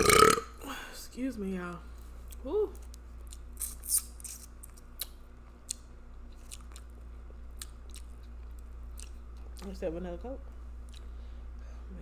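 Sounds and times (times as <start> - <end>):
steady low hum: 0.0 - 12.0
chewing and smacking clicks: 2.3 - 9.7, 10.8 - 11.1.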